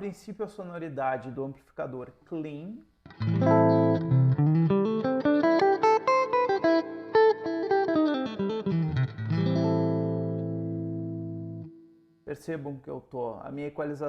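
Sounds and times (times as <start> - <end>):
clean electric guitar: 3.0 - 11.9.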